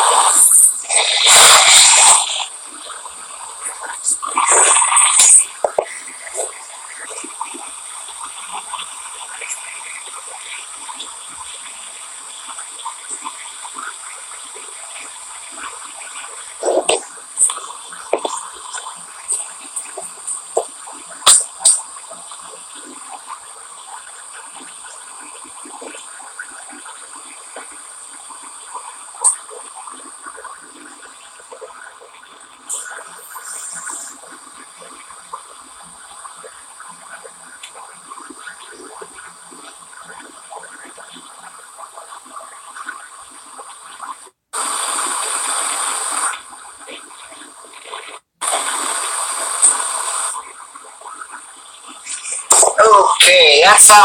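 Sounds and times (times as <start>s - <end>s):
torch flame hissing: 0.0s - 7.6s, 15.8s - 21.8s, 32.7s - 34.6s
gas torch hissing and sputtering: 0.0s - 38.2s, 44.6s - 47.2s, 47.9s - 51.0s
flux sizzling and crackling: 0.0s - 53.0s.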